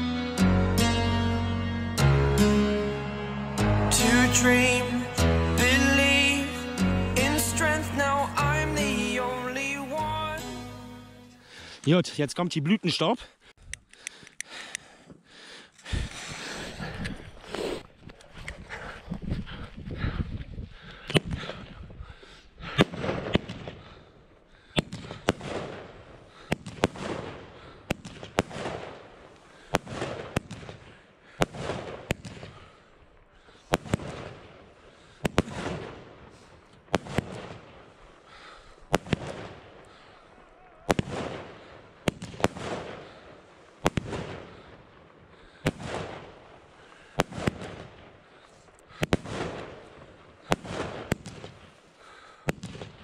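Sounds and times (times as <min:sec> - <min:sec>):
firework shots cracking and crackling: 0:22.7 - 0:24.0, 0:24.8 - 0:53.0.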